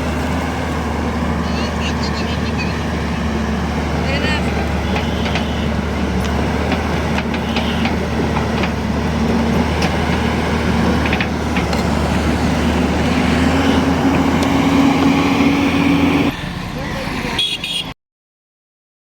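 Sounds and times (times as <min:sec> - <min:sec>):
excavator diesel engine running: 0:00.0 - 0:17.9
short knocks: 0:04.6 - 0:12.0.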